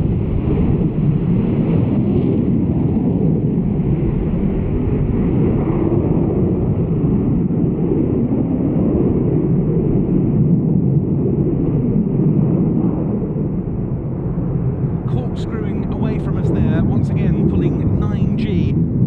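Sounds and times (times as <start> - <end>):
jet engine roar: 11.1 - 19.0.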